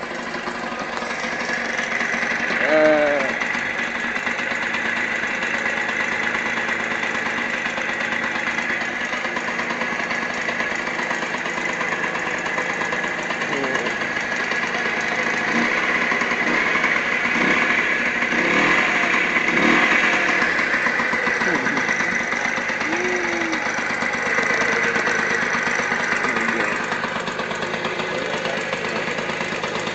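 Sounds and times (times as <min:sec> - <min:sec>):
scooter engine idling: 0:00.0 - 0:29.9.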